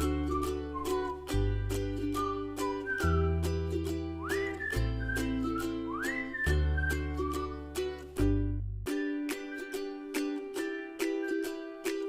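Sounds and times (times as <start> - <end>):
plucked strings tune: 0.0 - 12.0
whistled melody: 0.0 - 12.0
bass line: 6.4 - 9.0.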